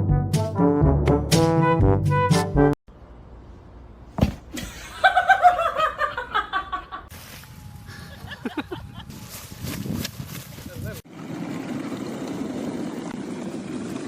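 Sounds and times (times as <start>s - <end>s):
thump: 4.2s - 4.7s
person laughing: 8.0s - 9.2s.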